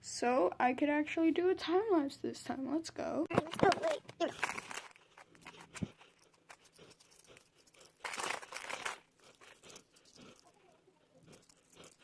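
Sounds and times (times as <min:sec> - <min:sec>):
crinkling and rustling: 0:03.3 - 0:12.0.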